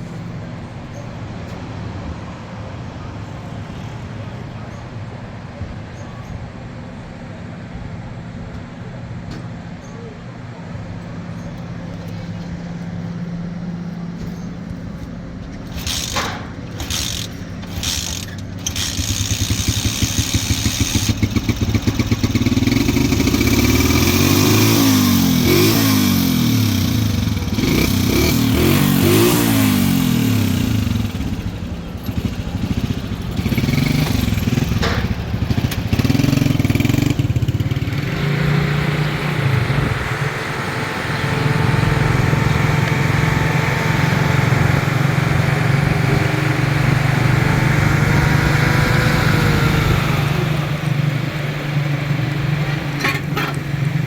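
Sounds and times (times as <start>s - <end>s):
motorcycle engine revving: 15.6s - 54.0s.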